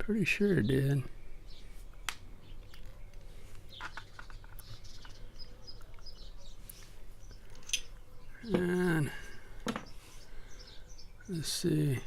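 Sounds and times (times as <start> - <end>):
bird chirping faintly: 0.0 - 12.0
lock parts clicking: 2.7 - 6.1, 7.5 - 8.0.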